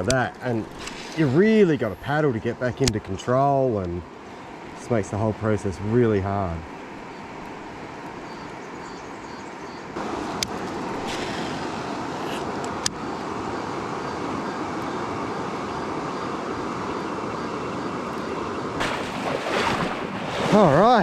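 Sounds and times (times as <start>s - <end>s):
water rushing over rapids: 10.0s - 21.0s.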